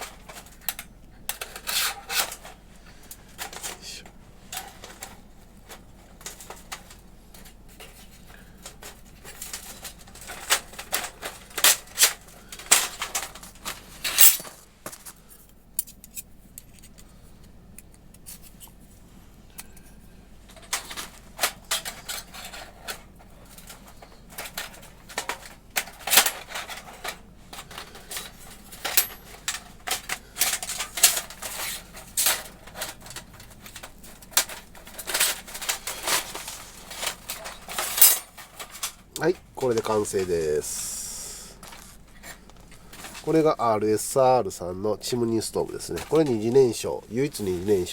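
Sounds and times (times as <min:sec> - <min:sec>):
metal panels clinking together: 0:08.6 - 0:14.5, 0:20.5 - 0:40.3.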